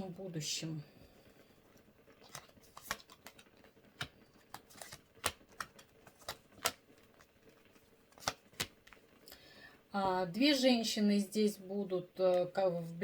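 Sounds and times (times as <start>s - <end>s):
cards being shuffled: 2.1s - 9.1s.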